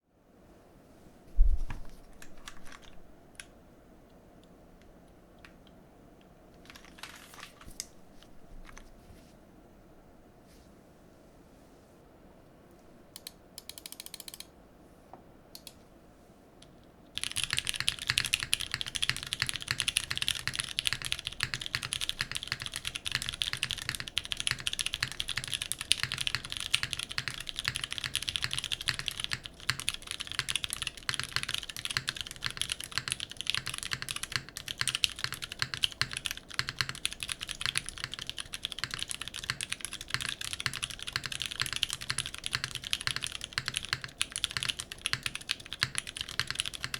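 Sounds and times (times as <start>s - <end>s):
mechanical keyboard typing: 2.1s - 3.5s, 6.6s - 7.5s, 13.2s - 14.5s, 17.2s - 46.9s.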